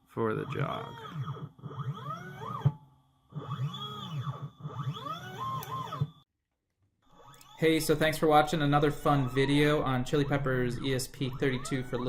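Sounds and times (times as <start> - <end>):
stepper motors whining: 0.2 - 6.2.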